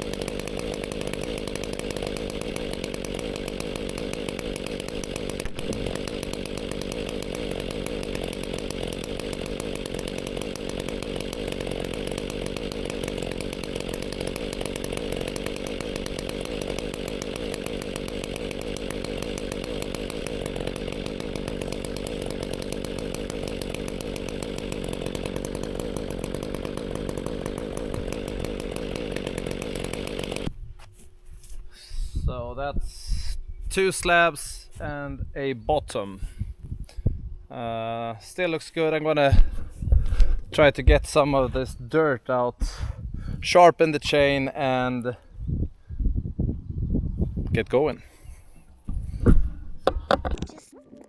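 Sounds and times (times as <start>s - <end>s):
chainsaw cutting log: 0.0s - 30.6s, 48.9s - 51.0s.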